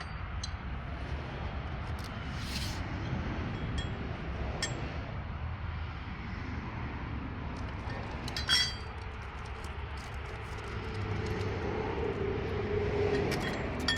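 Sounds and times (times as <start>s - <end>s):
low background rumble: 0.0s - 13.9s
metallic clinks of tools: 7.8s - 9.7s, 13.1s - 13.9s.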